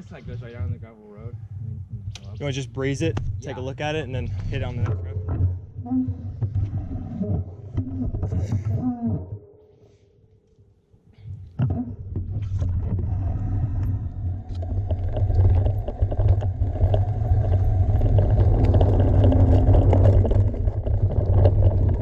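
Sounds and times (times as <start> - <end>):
wind buffeting microphone: 13.0 - 22.0
tyres rolling on dirt: 14.5 - 22.0
bike clicks and rattles: 14.6 - 22.0.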